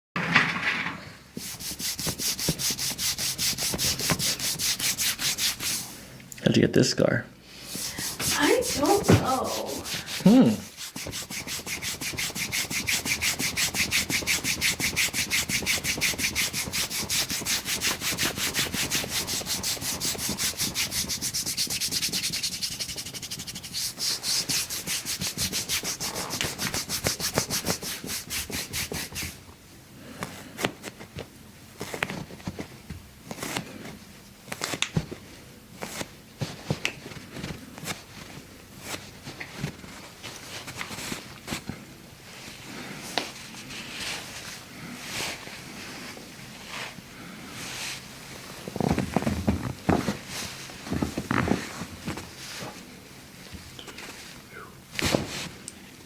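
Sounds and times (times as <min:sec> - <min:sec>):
fast rubbing strokes: 0:01.4 - 0:06.0, 0:07.6 - 0:29.4.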